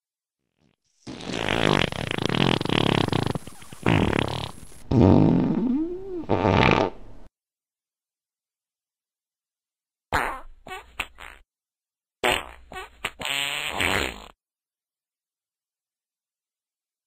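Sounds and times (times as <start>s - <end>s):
farts sputtering: 0.5s - 7.0s, 10.1s - 11.4s, 12.2s - 14.4s.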